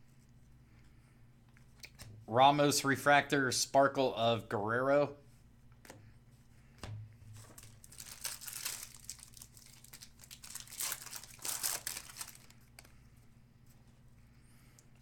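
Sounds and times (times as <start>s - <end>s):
foil wrapper crinkling and tearing: 7.4s - 12.9s.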